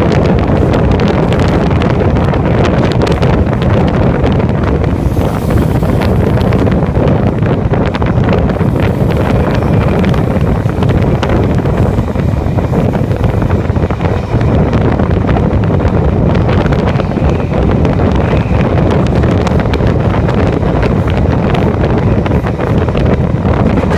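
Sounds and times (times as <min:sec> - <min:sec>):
train rumbling on track: 0:00.0 - 0:23.9
wind buffeting microphone: 0:00.0 - 0:23.9.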